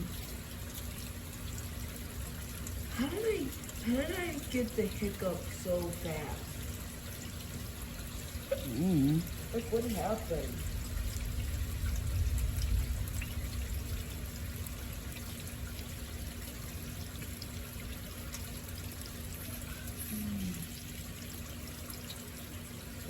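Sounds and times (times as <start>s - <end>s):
rain falling: 0.0s - 23.0s
water pouring and trickling: 0.0s - 23.0s
low rumble of thunder: 10.5s - 15.1s.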